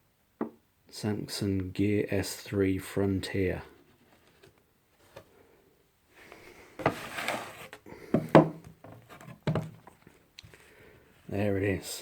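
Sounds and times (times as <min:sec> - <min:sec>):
cardboard packaging rustling: 0:06.8 - 0:10.3.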